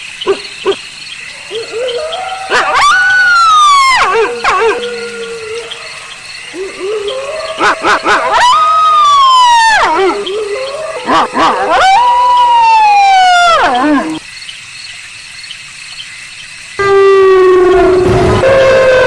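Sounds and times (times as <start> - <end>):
wolf yipping: 0.2 - 0.8, 1.4 - 14.2
wolf howling: 0.3 - 14.2, 16.8 - 19.0.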